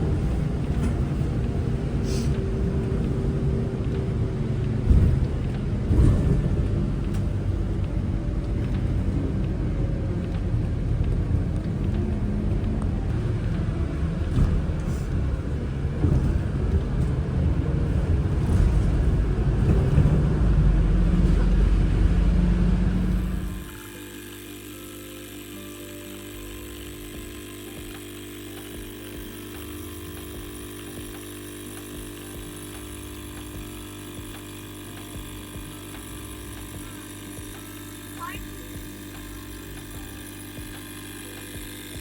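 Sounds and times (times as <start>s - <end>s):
vehicle engine rumbling: 0.0s - 23.8s.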